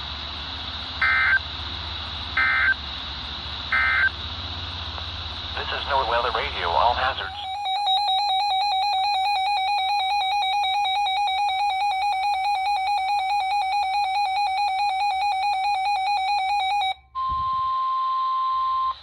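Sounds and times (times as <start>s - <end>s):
rapidly warbling electronic alarm beep: 1.0s - 1.4s, 2.4s - 2.8s, 3.7s - 4.2s, 7.0s - 19.0s
steady single-pitch alarm tone: 1.0s - 1.4s, 2.4s - 2.8s, 3.7s - 4.2s, 7.1s - 19.0s.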